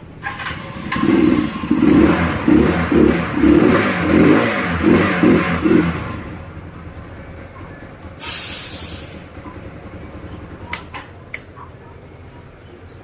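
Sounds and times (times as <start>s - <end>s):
hiss of air: 8.2s - 9.3s
sharp clicks: 10.7s - 11.6s.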